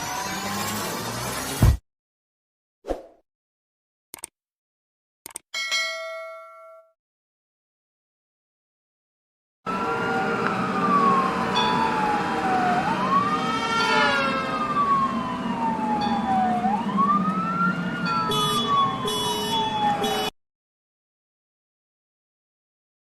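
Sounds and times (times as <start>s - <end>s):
police siren wailing: 9.7s - 20.3s
horn-like tone bursts: 18.3s - 20.3s.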